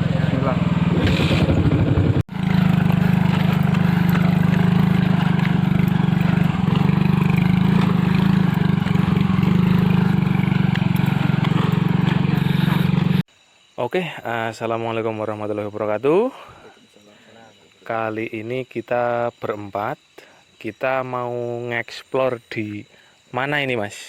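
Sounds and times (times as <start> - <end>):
motorcycle engine running: 0.0 - 13.3.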